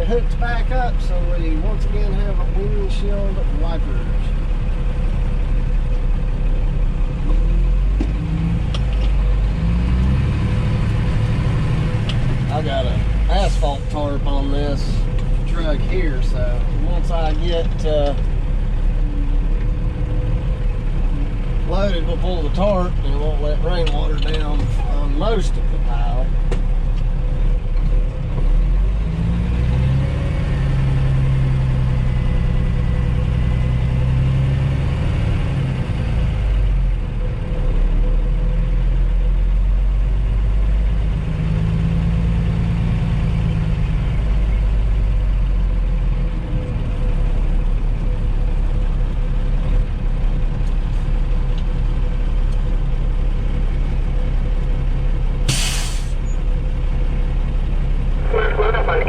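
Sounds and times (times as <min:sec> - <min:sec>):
diesel truck engine running: 0:00.0 - 0:59.0
air brake hiss: 0:55.5 - 0:56.2.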